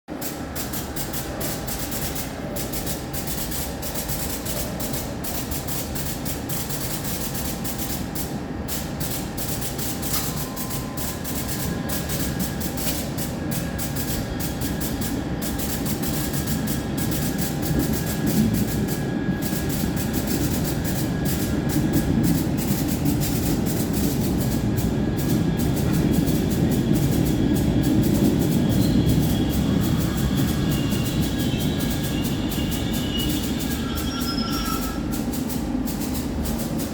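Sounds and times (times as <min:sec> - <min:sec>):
subway train rumble: 0:00.1 - 0:36.9
thin whining tones: 0:28.8 - 0:35.2.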